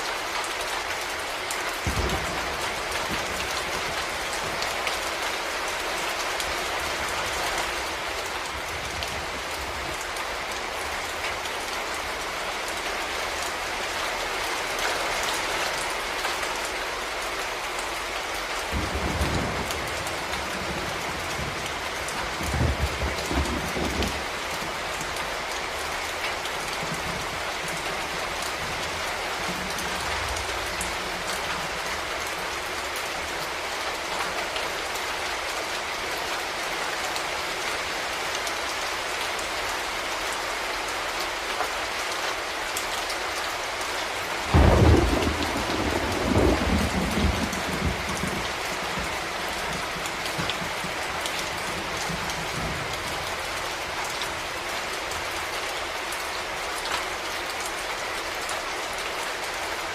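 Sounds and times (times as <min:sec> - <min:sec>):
steady rain: 0:00.0 - 0:59.9
thunderclap rumbling: 0:01.8 - 0:04.6, 0:18.7 - 0:24.9, 0:44.5 - 0:52.9.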